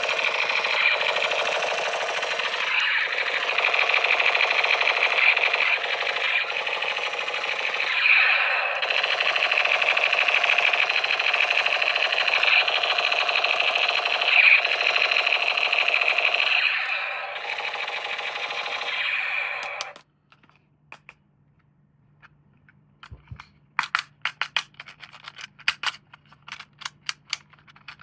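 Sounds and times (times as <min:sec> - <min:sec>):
toy motor rattling buzz: 0:00.0 - 0:20.0.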